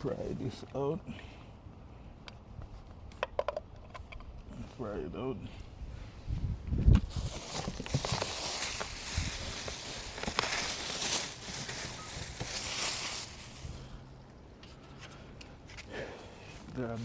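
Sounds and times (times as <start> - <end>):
rustling of handling: 7.0 - 14.0.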